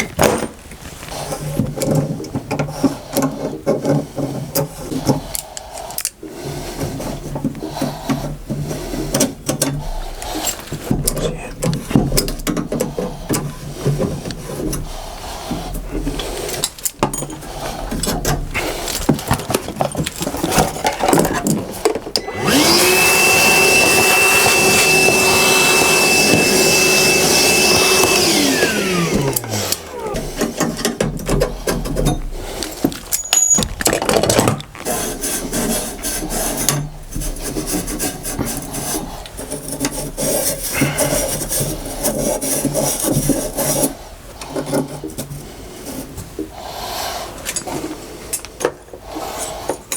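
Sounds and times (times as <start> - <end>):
scraping and rubbing of tools: 0.8 - 46.5
electric motor whining: 21.1 - 34.0.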